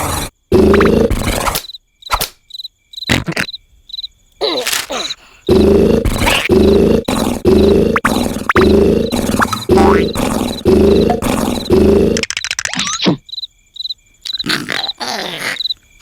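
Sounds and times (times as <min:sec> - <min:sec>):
person snoring loudly: 0:00.0 - 0:01.4, 0:04.4 - 0:12.2
cricket chirping: 0:00.0 - 0:16.0.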